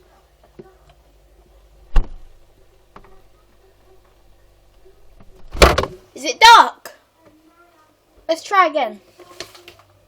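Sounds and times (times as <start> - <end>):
faint low fridge hum: 0.0 - 10.0
fridge door shutting: 1.9 - 2.4, 5.2 - 6.0.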